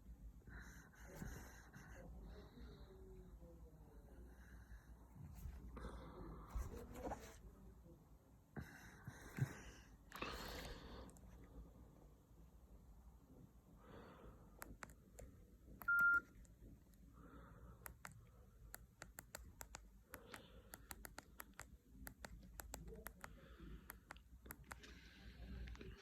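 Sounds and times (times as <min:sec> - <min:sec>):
key-tone beep: 0:15.8 - 0:16.3.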